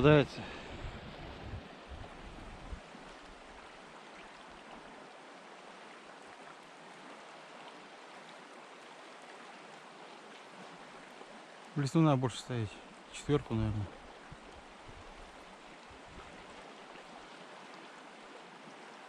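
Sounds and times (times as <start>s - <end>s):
wind rumble on microphone: 0.0s - 3.5s, 13.4s - 16.4s
river water flowing: 0.0s - 19.0s.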